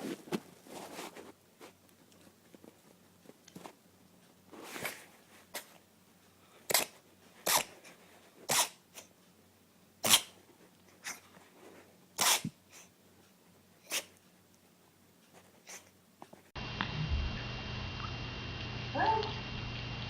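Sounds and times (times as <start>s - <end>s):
short sharp sneezes: 10.0s - 10.4s, 12.2s - 12.9s.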